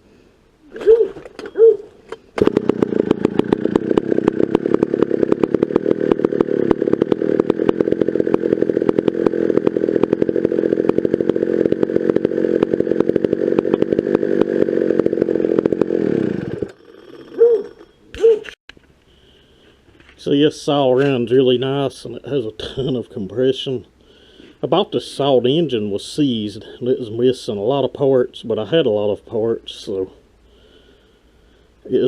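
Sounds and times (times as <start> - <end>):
chainsaw engine running: 2.3 - 18.0.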